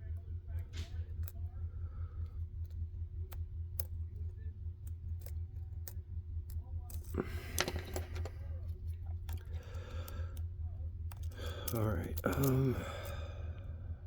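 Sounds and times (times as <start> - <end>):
low steady hum: 0.0 - 14.0
lock pick scraping and rattling: 7.0 - 8.4.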